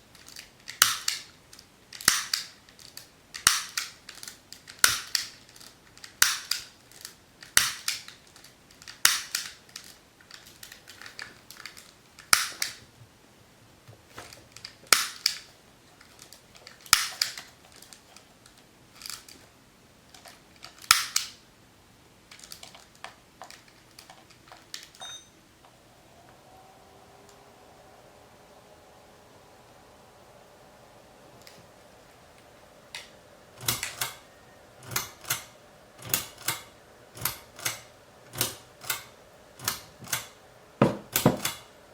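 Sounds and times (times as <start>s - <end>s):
sharp clicks and snaps: 0.1s - 12.8s, 14.2s - 19.5s, 20.1s - 21.4s, 22.3s - 25.0s, 32.4s - 34.2s, 34.8s - 40.4s.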